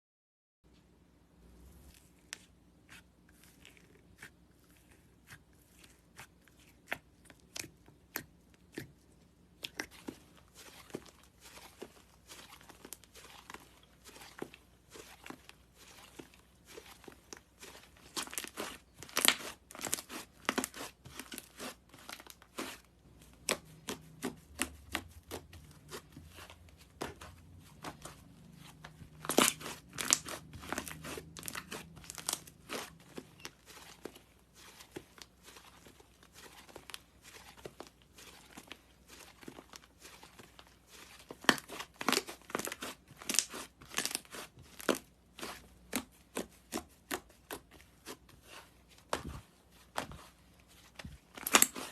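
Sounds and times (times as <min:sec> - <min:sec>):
slime popping and crackling: 0:29.2 - 0:32.9, 0:51.3 - 0:51.9.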